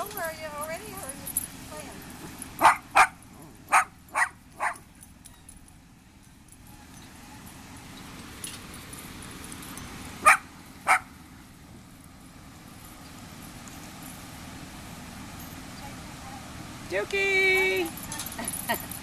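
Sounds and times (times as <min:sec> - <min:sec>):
small dog barking: 0:02.6 - 0:04.9, 0:10.2 - 0:11.1.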